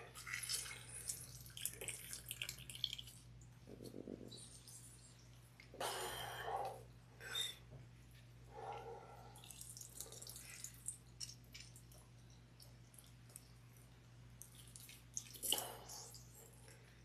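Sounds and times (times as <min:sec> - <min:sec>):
juice dripping into a bowl: 0:00.0 - 0:05.8, 0:09.3 - 0:17.0.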